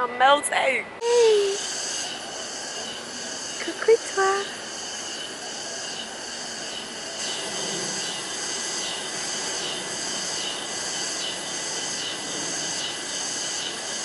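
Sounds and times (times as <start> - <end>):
low hum of city noise: 0.0 - 14.0
cicadas buzzing: 1.0 - 14.0.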